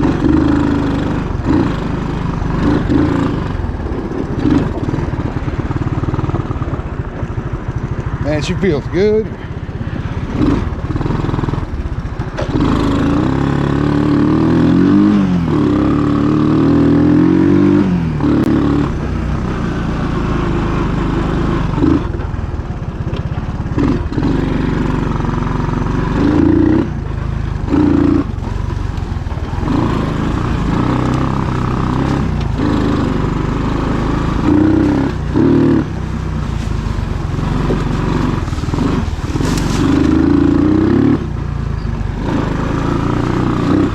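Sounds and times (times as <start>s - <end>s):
small engine revving under load: 27.6s - 43.9s.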